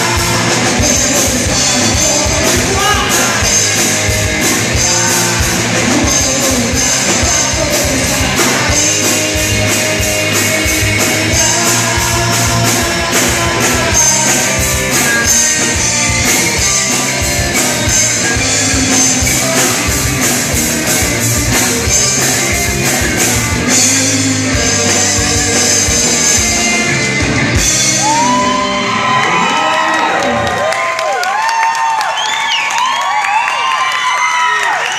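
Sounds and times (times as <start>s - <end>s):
shouted singing: 0.0s - 20.1s
guitars: 0.0s - 30.6s
fast driving drums: 0.0s - 30.7s.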